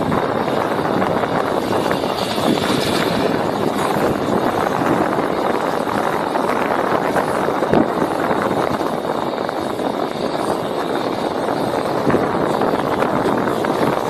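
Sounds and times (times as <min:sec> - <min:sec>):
train wheels clattering: 0:00.0 - 0:07.4
freight train rumble: 0:00.0 - 0:14.0.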